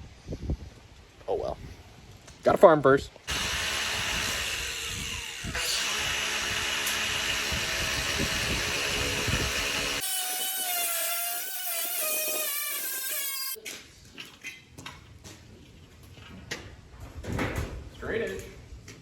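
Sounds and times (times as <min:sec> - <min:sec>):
power tool cutting steel: 0:03.3 - 0:13.6.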